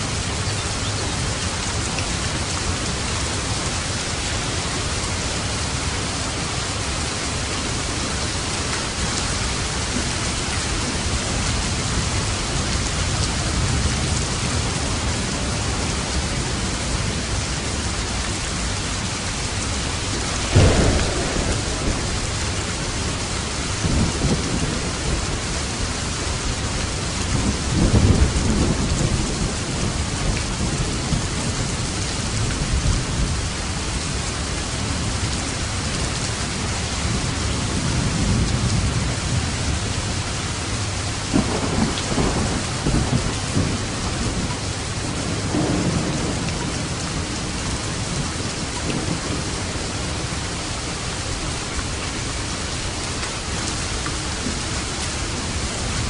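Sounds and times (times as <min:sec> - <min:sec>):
heavy rain: 0:00.0 - 0:56.0
rolling thunder rumbles: 0:18.6 - 0:35.3, 0:36.6 - 0:53.6
loud thunderclap: 0:20.2 - 0:25.9, 0:41.3 - 0:47.6.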